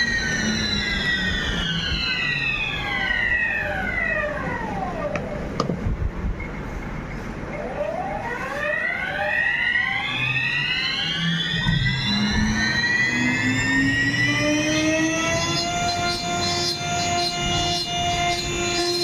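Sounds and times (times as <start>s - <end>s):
router spindle whine: 0.0s - 5.5s, 7.6s - 19.0s.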